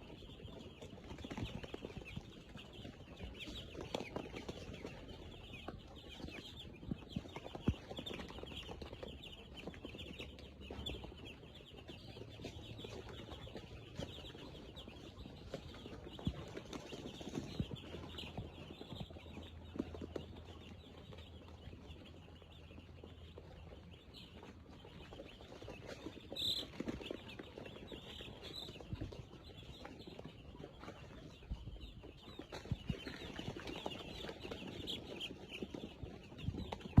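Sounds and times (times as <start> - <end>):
chickens clucking: 0.0 - 37.0.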